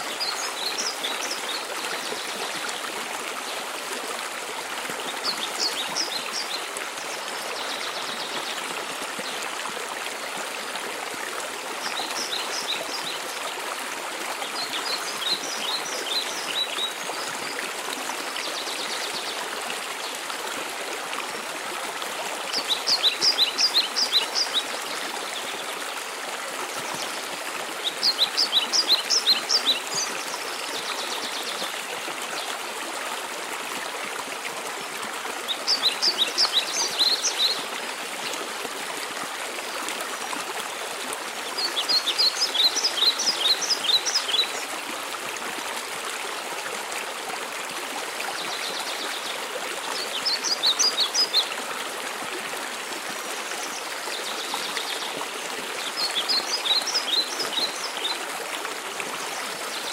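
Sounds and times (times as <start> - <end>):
songbird phrase: 35.5 - 37.7, 41.5 - 44.7, 48.4 - 51.5, 53.2 - 58.2.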